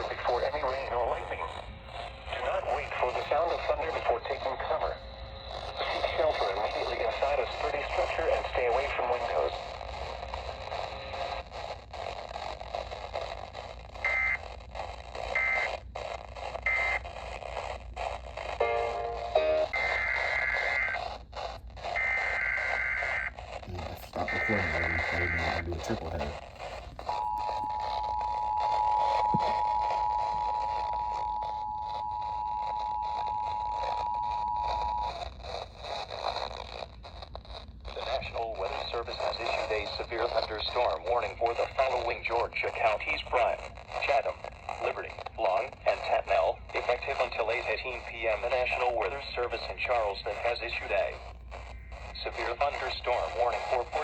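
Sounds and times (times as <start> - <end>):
radio static hiss: 0.0 - 54.0
two-tone alert signal over radio: 18.6 - 20.0, 24.0 - 35.2.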